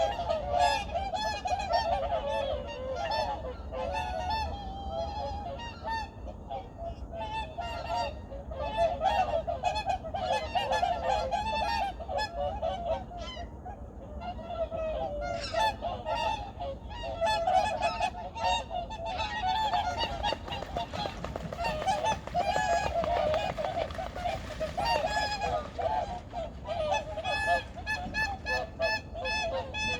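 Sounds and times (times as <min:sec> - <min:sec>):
flock of geese honking: 0:14.2 - 0:29.9.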